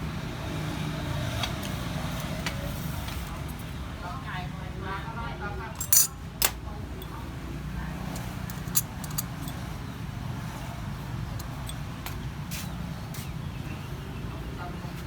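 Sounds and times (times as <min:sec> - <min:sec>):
background traffic hum: 0:00.0 - 0:15.0
tableware clinking: 0:05.8 - 0:06.2, 0:08.1 - 0:09.6.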